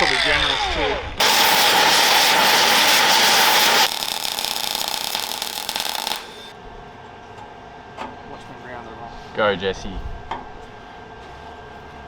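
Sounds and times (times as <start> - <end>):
power tool hissing and whining: 1.2 - 6.5.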